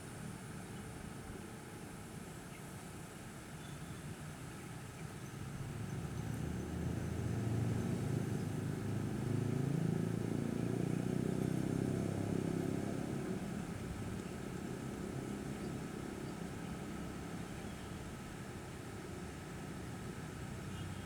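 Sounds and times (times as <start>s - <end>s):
motor engine passing by: 5.7s - 17.4s.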